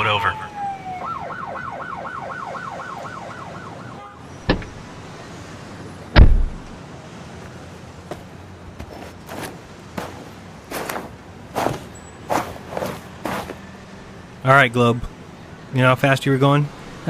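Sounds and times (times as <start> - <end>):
police siren yelping: 0.0 - 4.0
car door slam: 4.4 - 4.8, 6.2 - 6.8
footsteps: 7.4 - 13.6.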